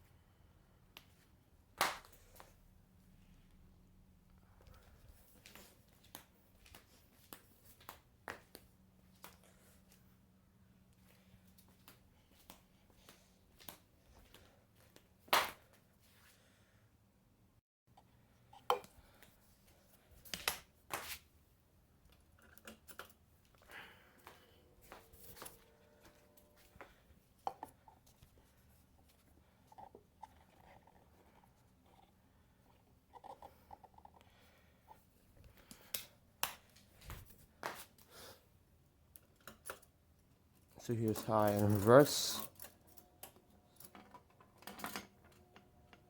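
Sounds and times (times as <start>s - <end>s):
faint low hum: 21.4s - 37.5s.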